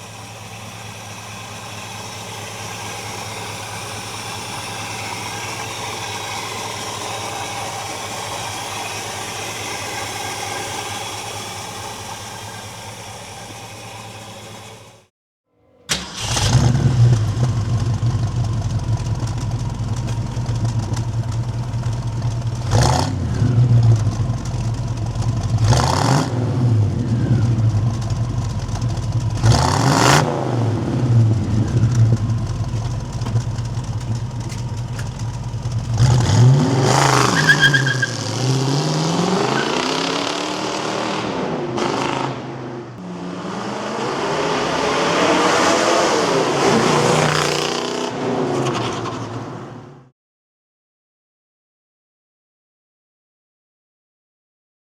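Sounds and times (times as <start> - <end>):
car engine accelerating hard: 0.0 - 15.0, 15.9 - 50.1
steady engine sound: 0.0 - 15.1, 15.9 - 37.4.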